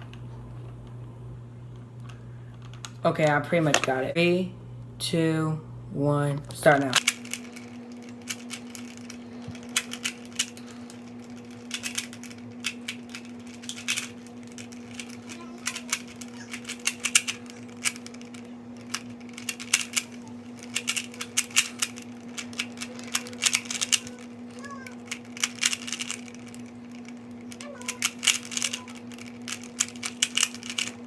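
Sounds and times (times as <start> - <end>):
steady low hum: 0.0 - 31.0
puzzle cube clicking: 11.7 - 30.9.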